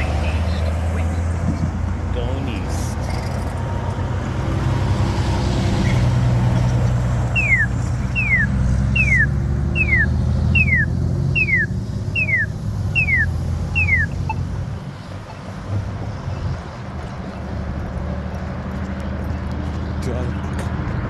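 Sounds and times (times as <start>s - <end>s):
passing road traffic: 0.0s - 21.0s
crossing signal falling chirps: 6.6s - 15.4s.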